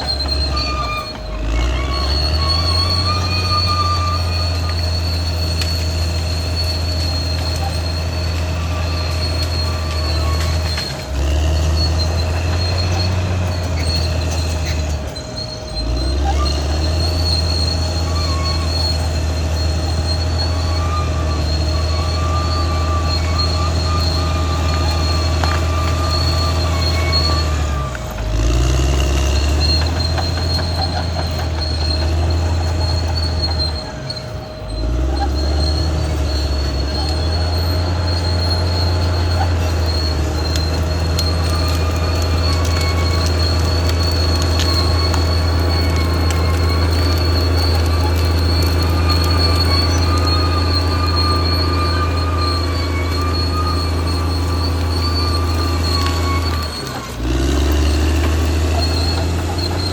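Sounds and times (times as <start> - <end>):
diesel engine droning: 0.0 - 59.9.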